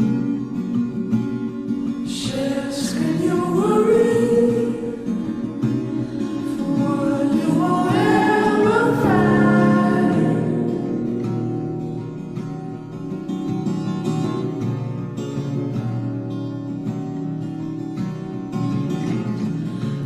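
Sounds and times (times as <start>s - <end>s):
song with sung vocals: 2.1s - 11.5s.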